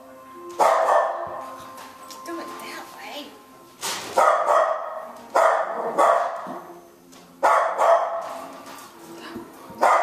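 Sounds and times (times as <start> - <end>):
dog barking roughly: 0.6 - 1.3, 4.2 - 6.5, 7.4 - 8.4.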